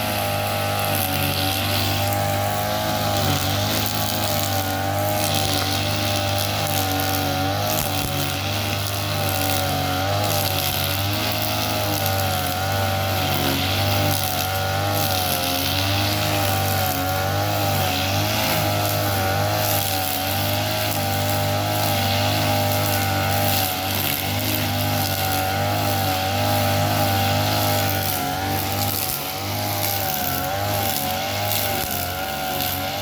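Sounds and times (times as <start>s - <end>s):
small petrol engine running: 0.0s - 33.0s.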